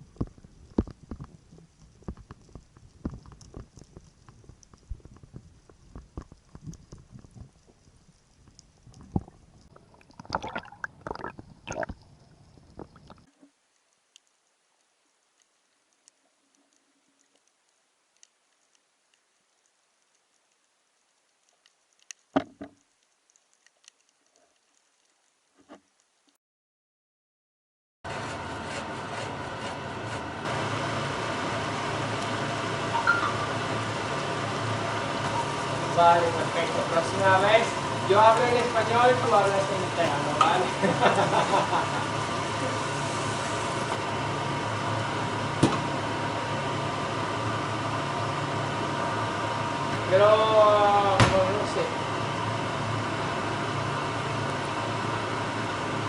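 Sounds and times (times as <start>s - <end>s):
low mechanical hum: 0.0s - 26.0s, 28.1s - 56.0s
faint clicking and crackling: 0.0s - 26.4s, 35.2s - 42.1s.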